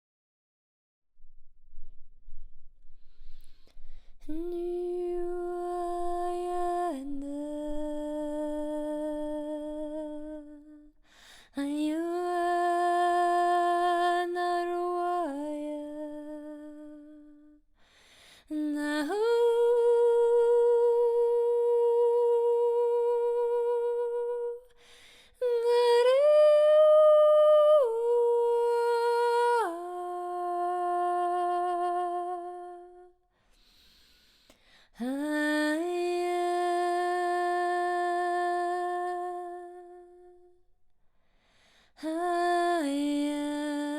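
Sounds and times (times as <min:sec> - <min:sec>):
woman singing long held notes: 0:04.2 - 0:17.6, 0:18.5 - 0:24.8, 0:25.4 - 0:33.1, 0:35.0 - 0:40.6, 0:42.0 - 0:43.9.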